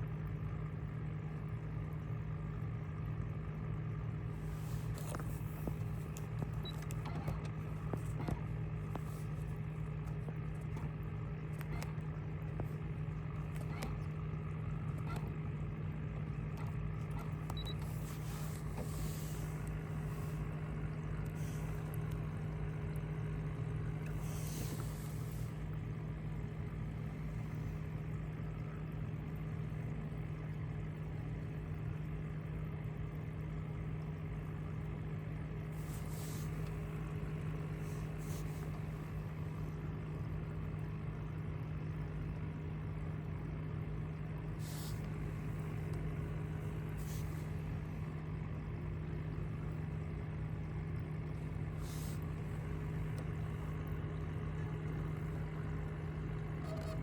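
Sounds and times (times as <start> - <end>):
engine running steadily: 0.0 - 57.0.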